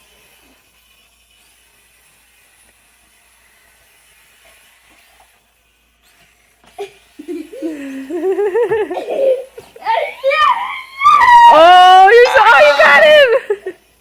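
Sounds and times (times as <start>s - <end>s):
child squealing: 9.2s - 13.4s.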